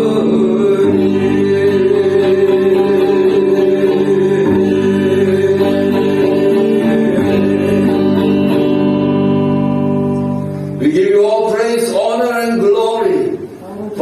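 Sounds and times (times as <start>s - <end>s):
worship music with singing: 0.0s - 14.0s
man speaking: 10.8s - 14.0s.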